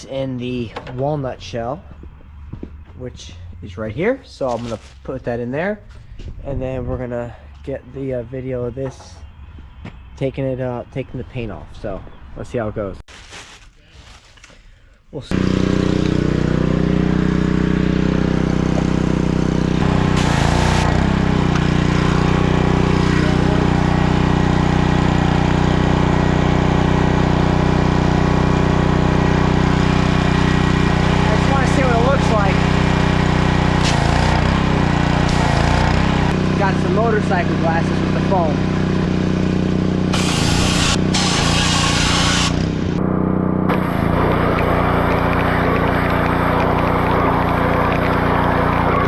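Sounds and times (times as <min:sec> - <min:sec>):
pressure washer engine running: 0:15.3 - 0:49.0
hissing spray burst: 0:19.8 - 0:21.1, 0:40.1 - 0:42.6.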